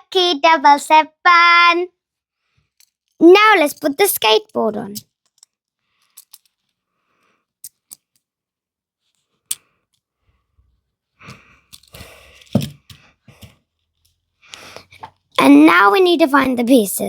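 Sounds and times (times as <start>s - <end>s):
plastic cubes clicking together: 4.5s - 6.6s, 7.6s - 8.2s, 11.3s - 13.5s.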